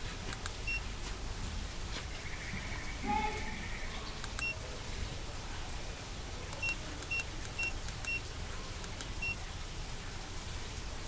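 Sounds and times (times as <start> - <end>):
faint clicks: 4.2 - 4.5, 8.8 - 9.2.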